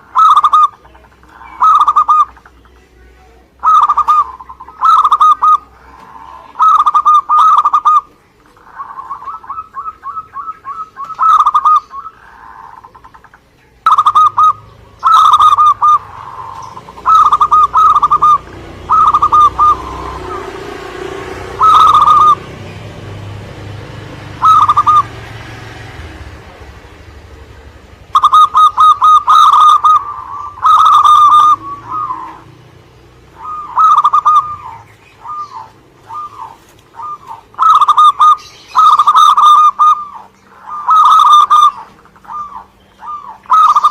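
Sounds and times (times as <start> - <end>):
dove cooing: 0.0 - 43.9.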